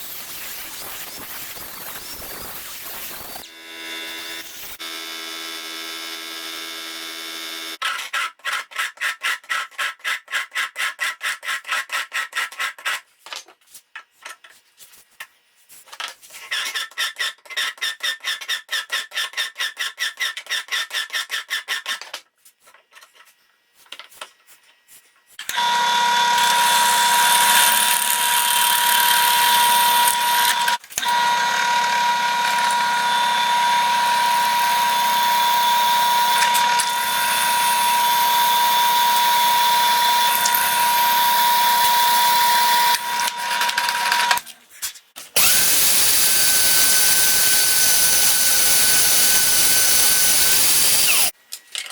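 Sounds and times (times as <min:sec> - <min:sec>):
power drill pulsing and whining: 0:01.4 - 0:07.8, 0:25.4 - 0:44.4, 0:45.4 - 0:51.4.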